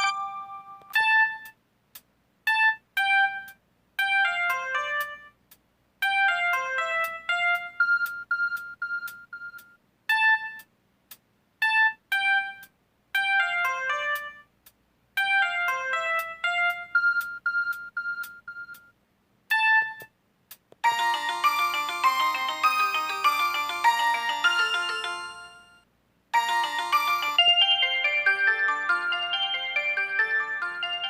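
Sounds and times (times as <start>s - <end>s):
mobile phone ringtone melody: 0.0s - 1.4s, 15.2s - 18.8s, 20.8s - 25.8s, 26.4s - 31.0s.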